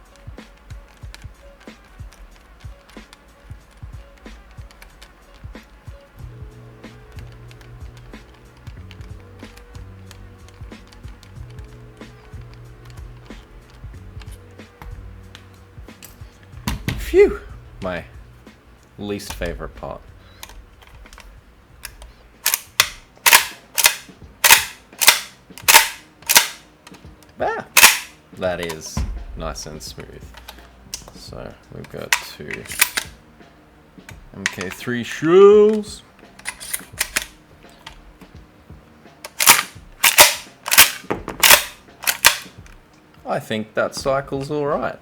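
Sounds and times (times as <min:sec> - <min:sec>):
handling clicks: 0:00.0 - 0:33.3, 0:34.0 - 0:38.5, 0:39.1 - 0:43.2
shotgun pump action clacking: 0:00.1 - 0:17.0, 0:18.7 - 0:33.2, 0:34.0 - 0:38.4, 0:39.2 - 0:42.9
loud sharp shotgun sounds: 0:20.4 - 0:26.7, 0:27.7 - 0:31.2, 0:32.1 - 0:33.2, 0:35.6 - 0:38.0, 0:39.3 - 0:42.8.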